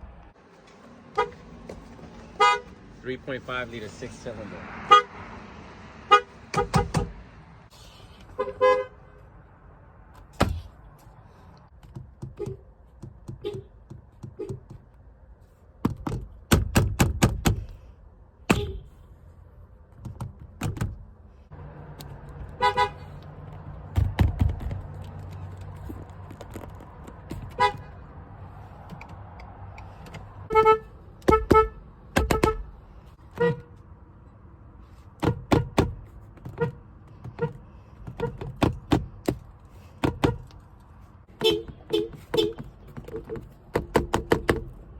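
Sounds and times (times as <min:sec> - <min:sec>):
car horn short toots: 0:02.4 - 0:02.7, 0:06.1 - 0:07.1, 0:18.5 - 0:18.9, 0:22.6 - 0:23.0, 0:27.6 - 0:27.9, 0:30.5 - 0:32.7, 0:41.4 - 0:42.6
sharp clicks and thunks: 0:06.5 - 0:07.2, 0:10.1 - 0:15.1, 0:15.8 - 0:17.8, 0:19.9 - 0:21.2, 0:23.2 - 0:28.1, 0:28.8 - 0:30.6, 0:31.2 - 0:33.7, 0:35.1 - 0:44.9.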